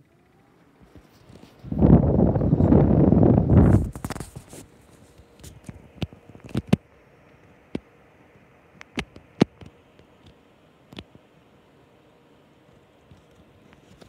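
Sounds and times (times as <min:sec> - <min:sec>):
fan airflow whoosh: 0:00.0 - 0:14.0.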